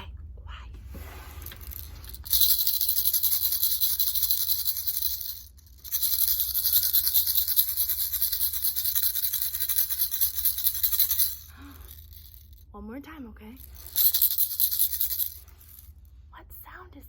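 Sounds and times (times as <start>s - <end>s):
buttons rattling in a shaken tube: 1.4s - 12.6s, 13.6s - 15.9s.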